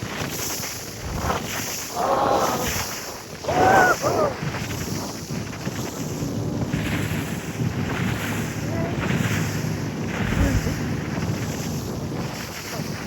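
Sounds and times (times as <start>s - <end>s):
water rushing past hull: 0.0s - 13.0s
wind buffeting microphone: 0.0s - 13.0s
boat motor running: 3.4s - 13.0s
high wavering cry: 3.5s - 4.4s.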